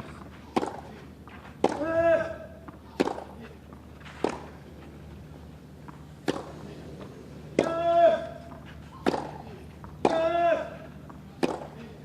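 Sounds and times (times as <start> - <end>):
tennis ball struck by racket: 0.5 - 1.0, 1.6 - 4.6, 5.9 - 6.7, 7.5 - 11.8.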